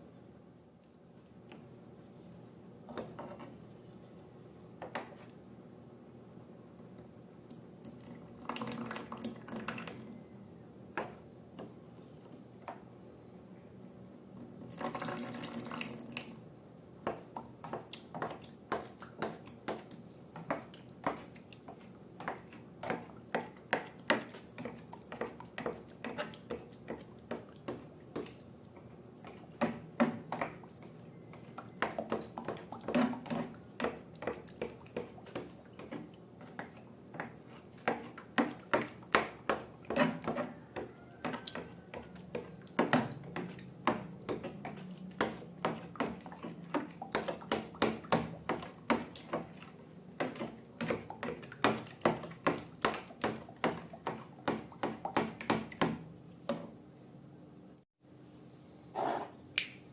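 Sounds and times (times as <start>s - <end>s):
splashy pour: 14.7s - 16.3s.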